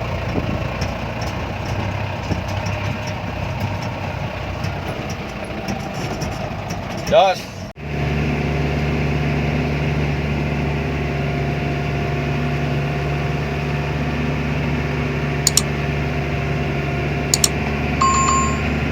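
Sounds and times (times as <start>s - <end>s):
diesel engine running: 0.0s - 18.9s
short sharp clicks: 15.5s - 15.7s, 17.4s - 17.6s.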